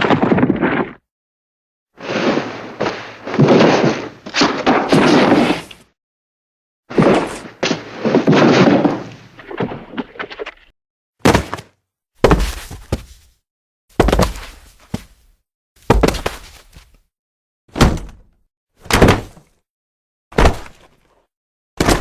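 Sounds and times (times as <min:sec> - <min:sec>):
body fall with clattering tail: 0:11.2 - 0:13.3, 0:14.0 - 0:15.2, 0:15.8 - 0:17.0
heavy thuds: 0:11.3 - 0:13.3, 0:14.0 - 0:17.0.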